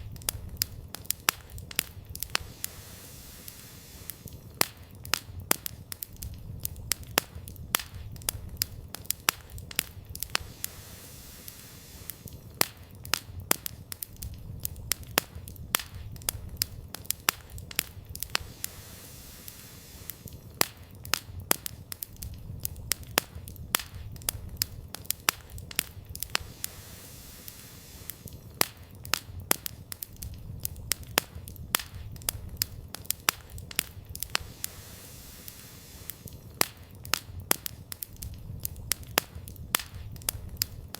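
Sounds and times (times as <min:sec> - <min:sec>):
campfire crackling and popping: 0:00.0 - 0:40.9.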